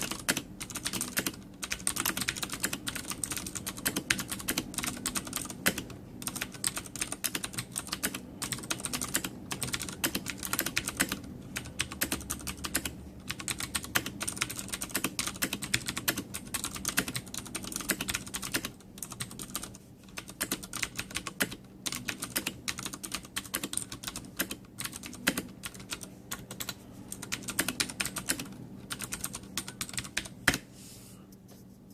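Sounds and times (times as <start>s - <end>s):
clicky keyboard typing: 0.0s - 30.6s.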